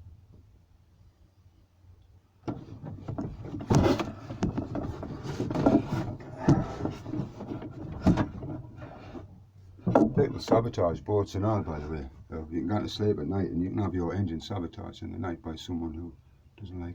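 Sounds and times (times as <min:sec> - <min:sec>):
knocks and clatters of handling: 0:02.4 - 0:10.8.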